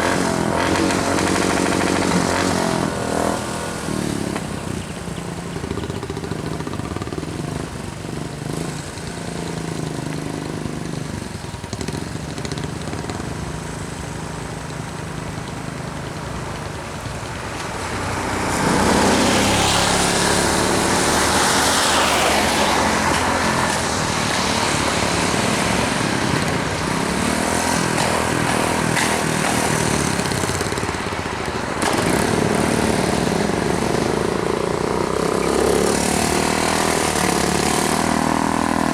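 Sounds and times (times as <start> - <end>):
vehicle engines on road: 0.0 - 38.9
loud vehicle passing close: 16.1 - 38.9.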